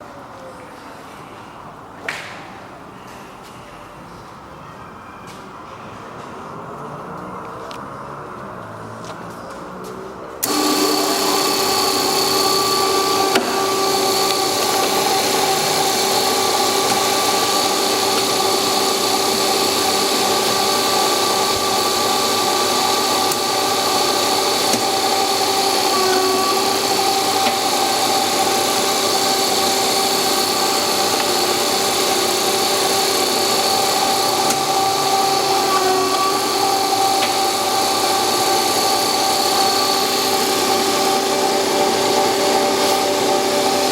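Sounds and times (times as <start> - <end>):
paper drilling machine whining: 10.4 - 43.9.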